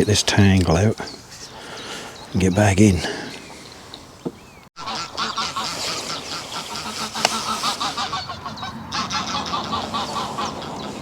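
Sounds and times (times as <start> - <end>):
geese honking: 4.8 - 11.0.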